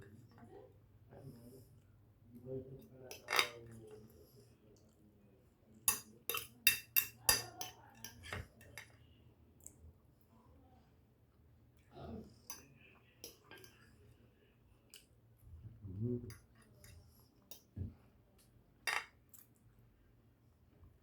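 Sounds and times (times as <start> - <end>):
cutlery scraping a plate: 3.1 - 3.7, 5.9 - 8.9.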